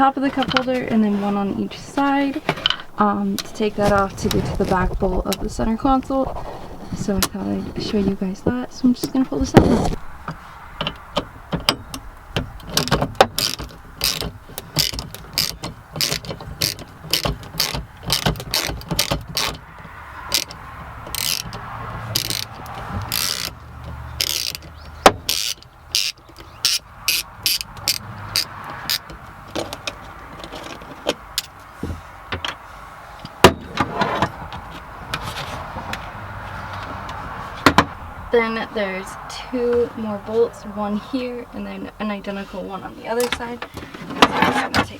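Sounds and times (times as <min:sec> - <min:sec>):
tools and plastic trim clicking: 0:10.8 - 0:19.7, 0:20.3 - 0:31.6.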